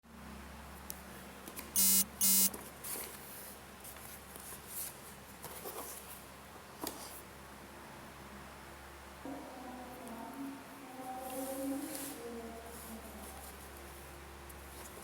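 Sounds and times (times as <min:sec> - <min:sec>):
buzzy electronic beeps: 0:01.8 - 0:02.5.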